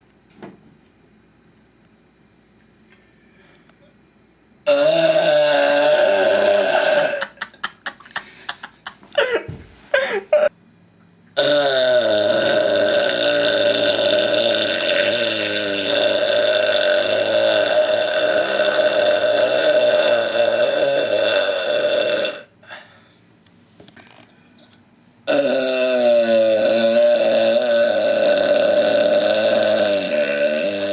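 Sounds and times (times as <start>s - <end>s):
man belching: 4.7s - 7.5s, 11.4s - 22.5s, 25.3s - 30.9s.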